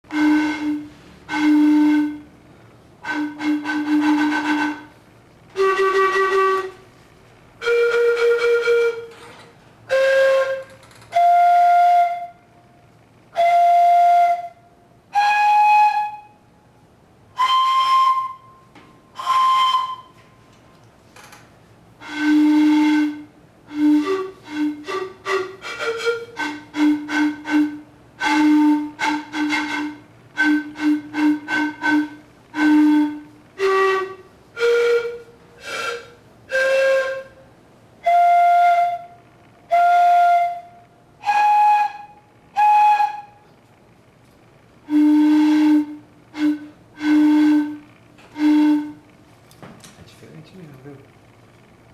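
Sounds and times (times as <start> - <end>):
flute playing notes: 0.1 - 2.4, 3.0 - 7.0, 7.6 - 16.6, 17.3 - 20.5, 22.0 - 43.6, 44.8 - 49.1.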